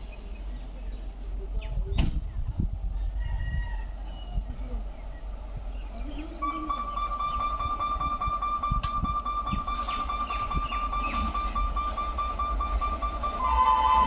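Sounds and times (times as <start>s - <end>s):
street noise: 0.0s - 14.0s
voices: 0.0s - 14.0s
high-pitched electronic warning tone: 6.4s - 14.0s.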